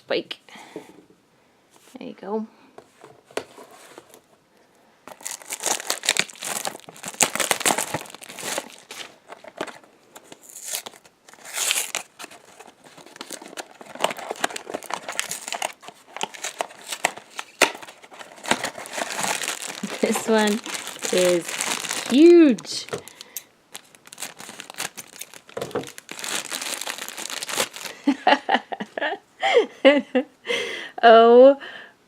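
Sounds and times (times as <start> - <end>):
packaging crinkling and tearing: 5.1 - 28.1.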